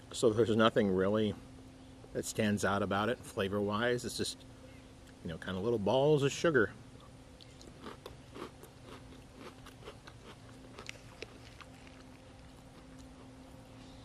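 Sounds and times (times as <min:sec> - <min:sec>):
faint steady hum: 0:00.0 - 0:14.0
chewing crunchy cereal: 0:07.0 - 0:13.9.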